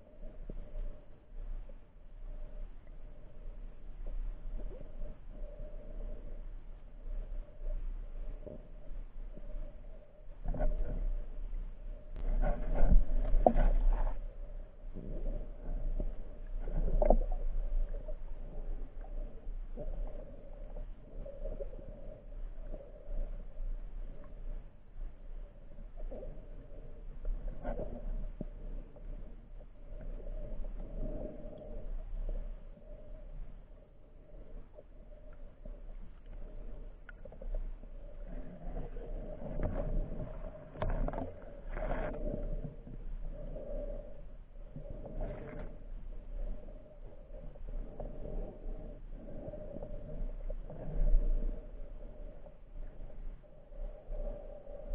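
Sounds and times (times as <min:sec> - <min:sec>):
muffled underwater hum: 0:00.0 - 0:54.9
underwater gurgling: 0:35.4 - 0:43.9.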